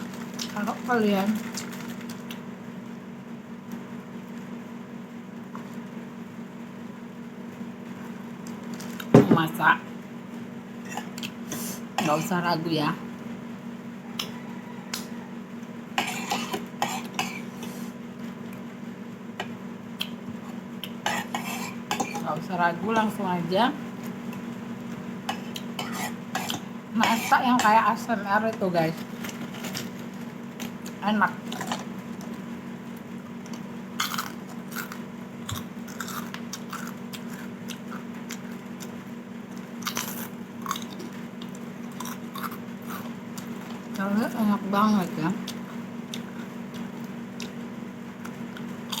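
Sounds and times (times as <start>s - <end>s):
steady low hum: 0.0s - 49.0s
person chewing crunchy food: 14.1s - 15.2s, 25.3s - 27.3s, 28.9s - 44.0s, 45.4s - 47.6s, 48.2s - 49.0s.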